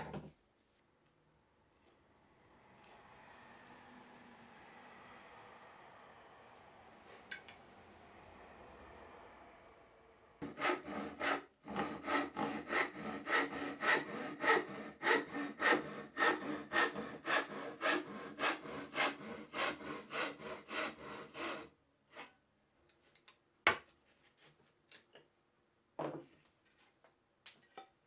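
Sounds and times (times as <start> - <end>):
hand saw cutting wood: 10.4 - 21.7.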